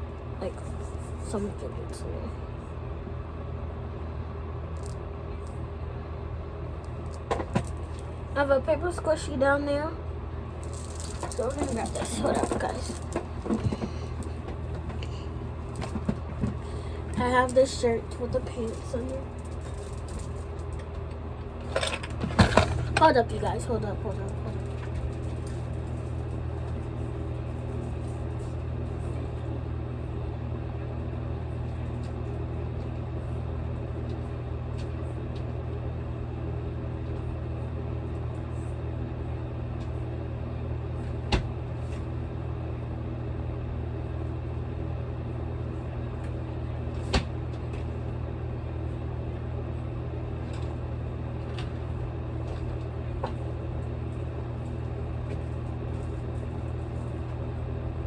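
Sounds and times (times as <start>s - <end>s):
air conditioner humming: 0.0s - 58.0s.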